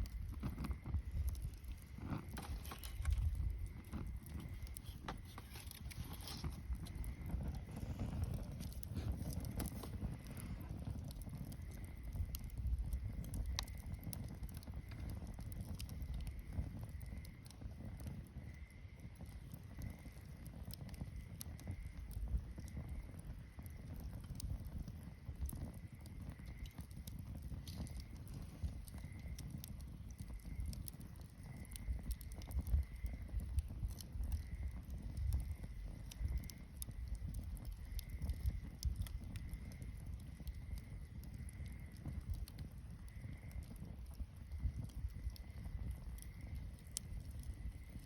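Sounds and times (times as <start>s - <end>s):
low uneven rumble: 0.0s - 18.2s
campfire flame rumble: 0.0s - 48.0s
fire crackling and popping: 0.0s - 48.0s.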